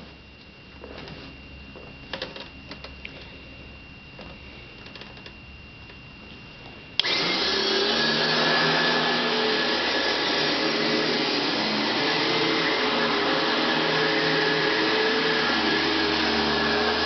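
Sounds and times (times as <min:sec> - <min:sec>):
vacuum motor running: 0:07.0 - 0:17.0.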